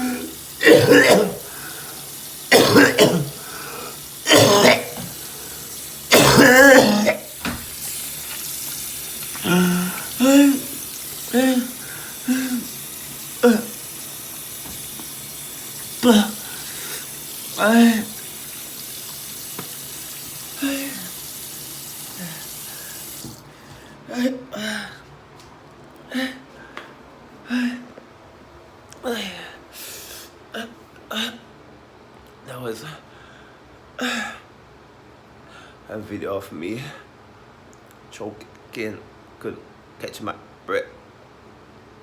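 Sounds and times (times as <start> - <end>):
person choking and gasping: 0.0 - 1.7, 2.5 - 5.2, 6.1 - 7.4, 9.3 - 12.7, 13.4 - 13.8, 16.0 - 16.9
water tap running: 0.0 - 23.6
strained coughs: 0.6 - 1.5, 2.5 - 3.4, 4.3 - 5.1, 6.1 - 7.3.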